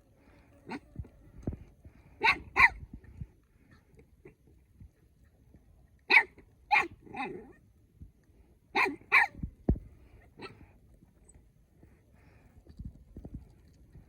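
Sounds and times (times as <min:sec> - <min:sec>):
puppy yipping: 0:02.2 - 0:02.8, 0:06.1 - 0:07.5, 0:08.8 - 0:09.4.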